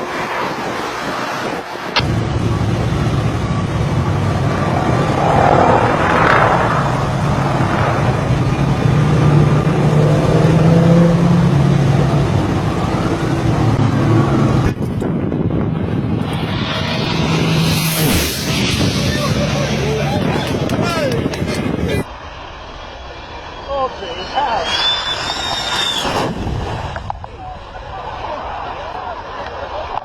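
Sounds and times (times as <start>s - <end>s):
aircraft engine drone: 0.0s - 30.0s
rushing wind: 0.0s - 30.0s
hiss: 24.3s - 26.4s.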